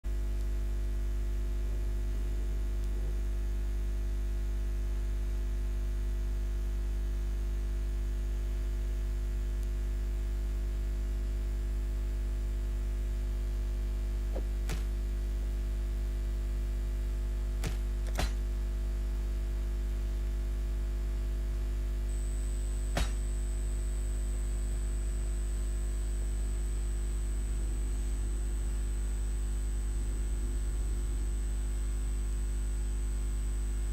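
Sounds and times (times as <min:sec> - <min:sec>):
low electrical hum: 0:00.1 - 0:33.9
sharp clicks: 0:17.6 - 0:18.4.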